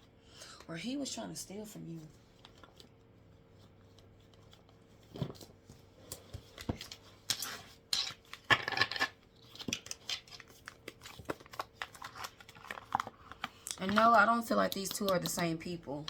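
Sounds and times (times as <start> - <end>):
cards tapping and clicking: 6.1 - 15.6.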